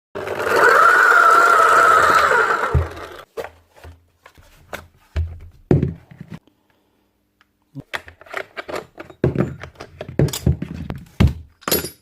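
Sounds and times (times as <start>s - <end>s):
electric motor whining: 0.3s - 3.2s.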